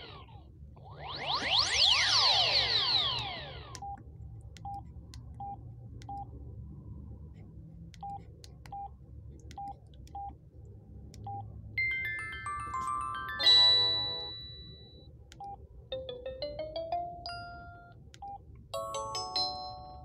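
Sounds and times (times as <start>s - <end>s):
electronic phone melody: 11.8s - 15.0s, 15.9s - 18.0s, 18.8s - 20.0s.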